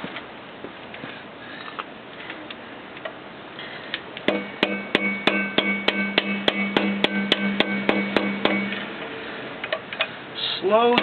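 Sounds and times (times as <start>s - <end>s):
hammer striking metal drift: 4.3s - 8.9s.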